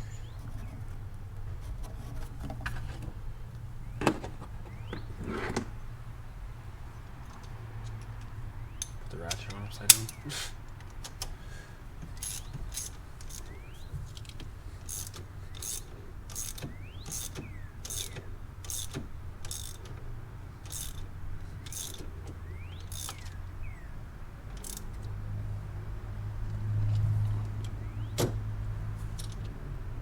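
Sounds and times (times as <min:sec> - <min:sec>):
ratchet wrench ratcheting: 0:12.2 - 0:20.0, 0:20.6 - 0:22.0, 0:22.8 - 0:23.4, 0:24.6 - 0:25.0.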